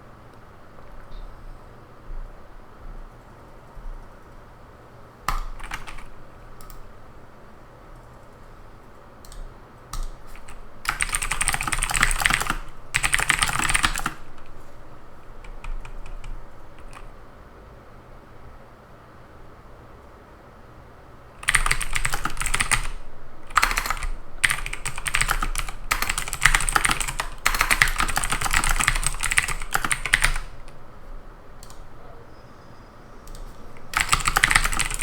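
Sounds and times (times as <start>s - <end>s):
steady low hiss: 0.0s - 35.0s
computer keyboard typing: 5.3s - 6.9s, 9.2s - 17.1s, 21.4s - 30.8s, 31.6s - 31.9s, 33.2s - 35.0s.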